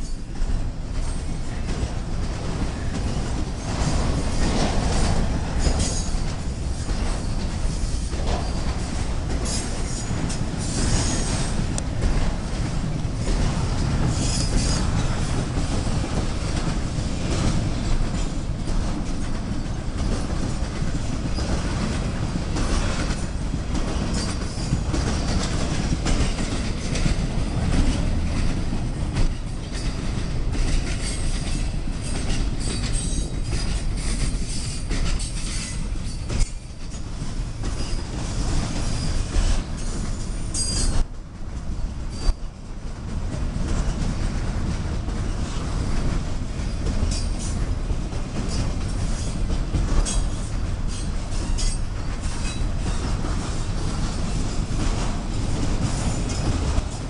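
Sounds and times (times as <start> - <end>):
wheels clicking over rail joints: 0.0 - 42.4, 43.0 - 57.0
railcars rumbling: 0.0 - 57.0.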